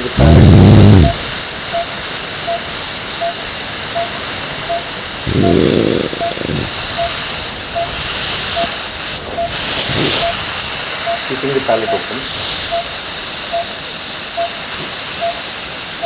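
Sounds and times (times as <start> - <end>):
cpap airflow hiss: 0.0 - 16.0
monitor beeping: 1.0 - 6.4, 7.8 - 8.8, 9.4 - 9.6, 10.2 - 13.8, 14.4 - 14.6, 15.2 - 15.5.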